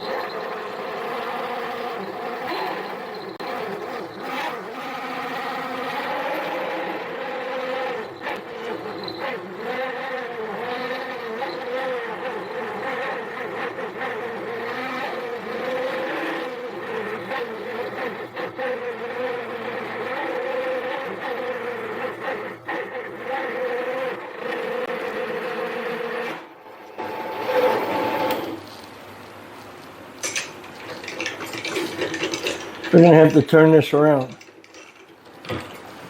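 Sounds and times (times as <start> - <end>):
lathe buzzing whine: 0.0 - 36.0.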